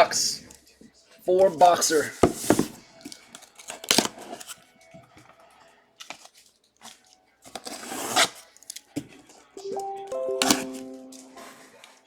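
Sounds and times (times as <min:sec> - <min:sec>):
faint background music: 0:00.0 - 0:12.0
card boxes rustling: 0:01.9 - 0:04.6.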